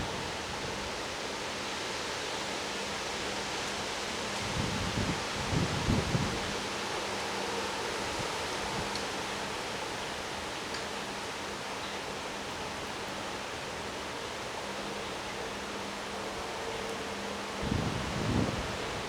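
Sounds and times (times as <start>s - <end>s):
high wind: 0.0s - 2.0s, 3.8s - 10.5s, 14.3s - 19.0s
rain: 0.0s - 19.0s.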